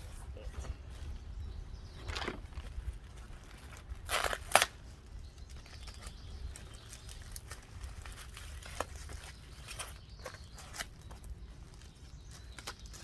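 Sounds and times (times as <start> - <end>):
packaging rustling and crinkling: 2.0 - 5.0, 5.6 - 13.0.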